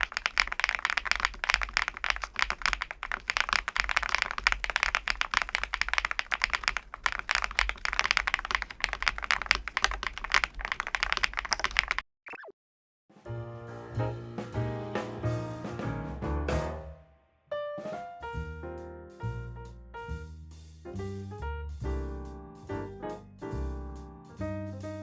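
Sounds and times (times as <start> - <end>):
mechanical keyboard typing: 0.0 - 12.0.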